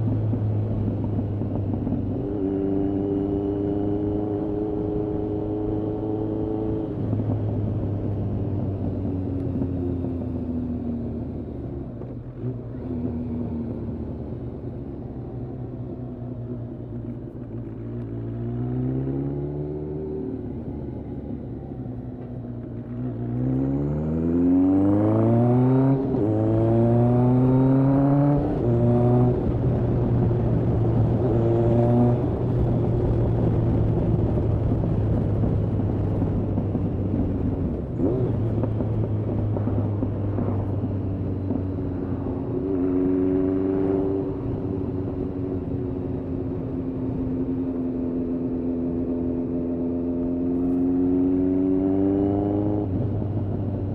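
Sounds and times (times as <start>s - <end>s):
motorcycle engine revving: 22.7s - 53.9s.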